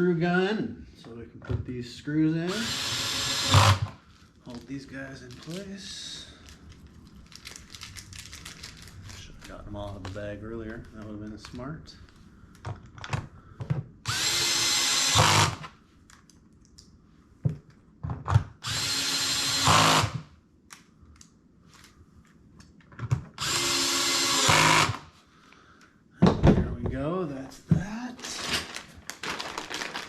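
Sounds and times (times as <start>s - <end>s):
screw gun driving screws: 2.5s - 3.9s, 14.1s - 15.7s, 18.6s - 20.2s, 23.4s - 25.0s.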